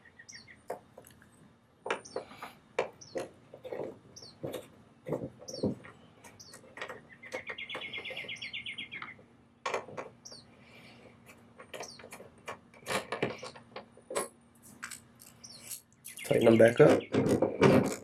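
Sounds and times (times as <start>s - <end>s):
bird trilling and chirping: 0.0s - 0.6s, 4.2s - 4.4s, 5.4s - 9.2s, 11.8s - 12.1s, 15.2s - 17.3s
hand tools clicking and knocking: 11.3s - 18.0s
metal hardware being handled: 11.6s - 16.6s.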